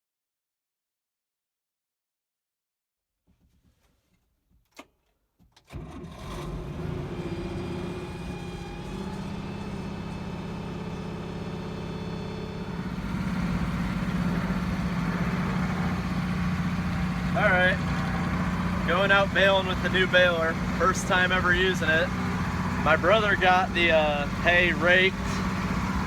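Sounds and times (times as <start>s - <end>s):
tractor diesel engine running: 5.7s - 26.0s.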